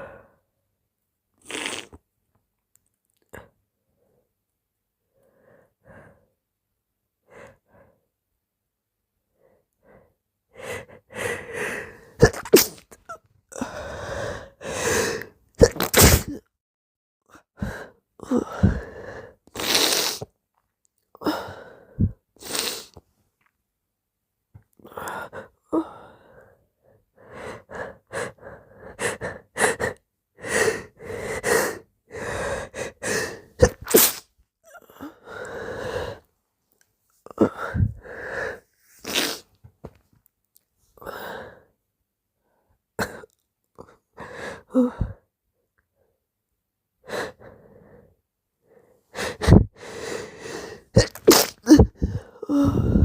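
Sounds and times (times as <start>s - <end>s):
person sneezing wetly: 12.2s - 13.0s, 15.6s - 16.4s, 33.6s - 34.3s, 51.0s - 52.2s
moaning and whining breaths: 51.9s - 53.0s.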